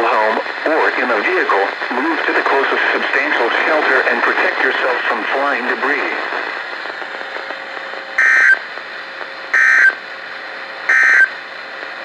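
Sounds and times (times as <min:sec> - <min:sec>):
radio hiss: 0:00.0 - 0:12.0
digital data tone bursts: 0:08.2 - 0:08.6, 0:09.6 - 0:10.0, 0:10.9 - 0:11.3.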